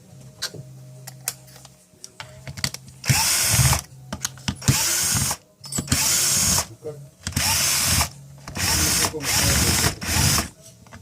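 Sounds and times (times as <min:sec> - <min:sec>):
cordless drill running: 0:03.0 - 0:03.8, 0:06.0 - 0:06.7, 0:07.3 - 0:10.5.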